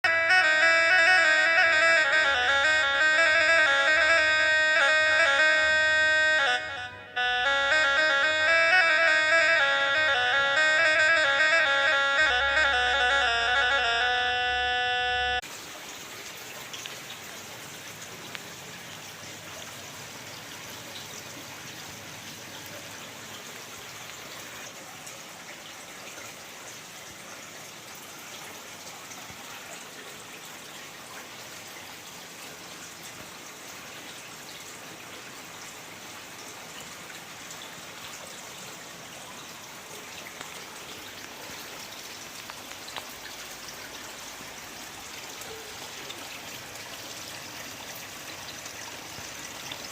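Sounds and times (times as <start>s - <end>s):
water trickling and splashing: 0.0s - 14.7s, 15.4s - 49.9s
music with sustained tones: 0.0s - 15.4s
faint ticks: 42.4s - 43.4s.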